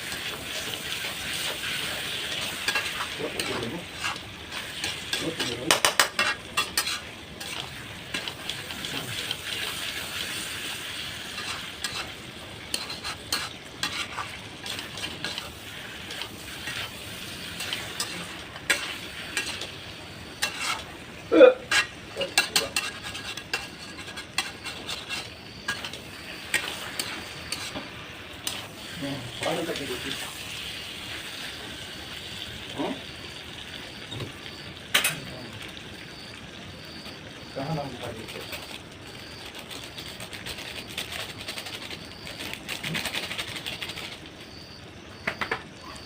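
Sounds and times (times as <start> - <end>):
metal spoon scraping a pan: 0.0 - 21.0, 21.6 - 30.5
curry sizzling in a pan: 0.0 - 46.0.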